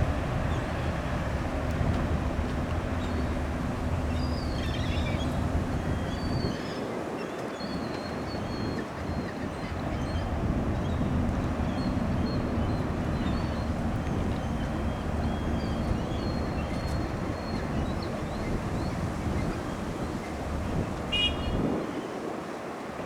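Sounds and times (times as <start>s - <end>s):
ship engine drone: 0.0s - 6.4s, 10.3s - 21.6s.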